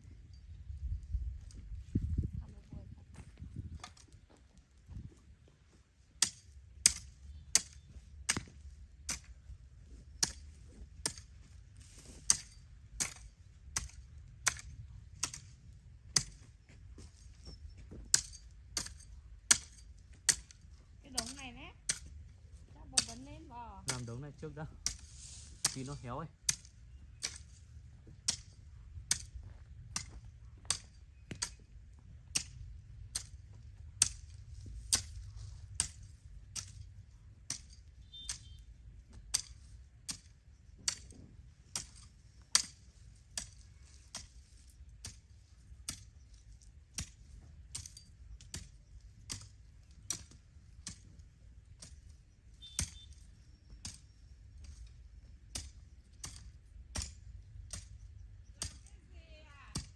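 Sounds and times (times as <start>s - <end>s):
low steady rumble: 0.0s - 6.0s, 6.6s - 45.6s.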